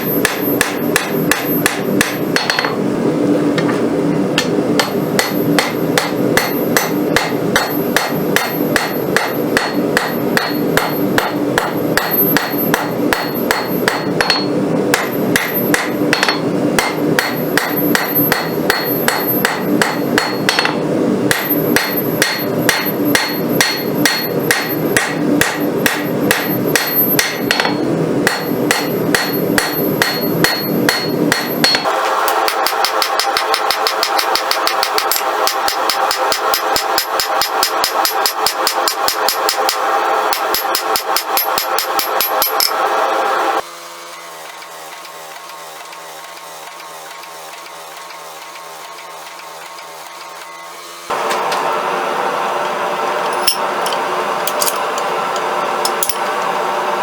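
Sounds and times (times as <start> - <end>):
hammer striking steel on anvil: 0.0 - 2.8, 4.4 - 43.0, 53.4 - 55.1, 55.8 - 56.4
steady background hum: 0.0 - 57.0.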